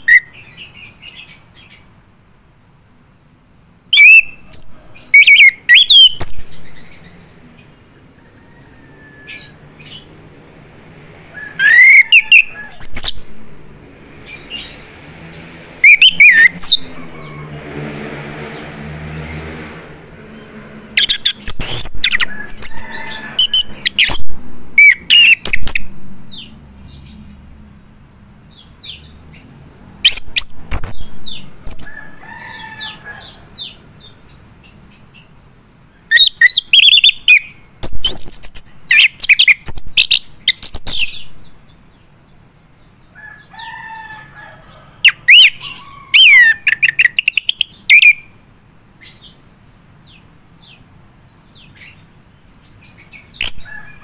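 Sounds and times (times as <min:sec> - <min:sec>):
thrush whistling trills: 0:11.4 - 0:13.7, 0:15.8 - 0:17.5.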